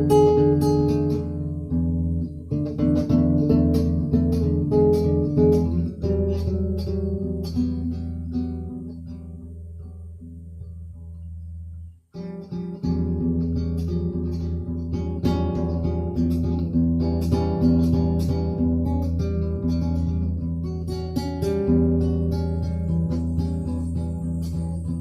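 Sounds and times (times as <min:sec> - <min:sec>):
plucked acoustic guitar: 0:00.0 - 0:25.0
low bass line: 0:21.6 - 0:25.0.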